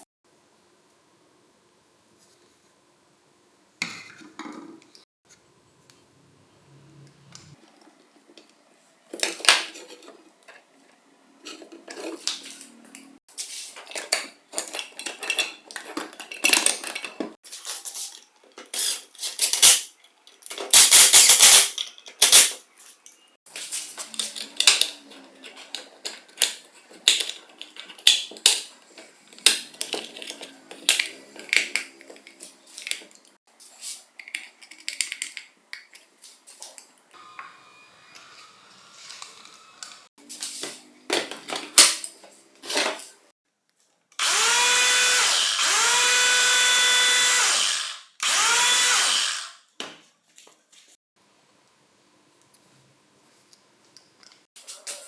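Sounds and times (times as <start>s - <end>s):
metal tool parts clinking: 13.9s - 23.2s.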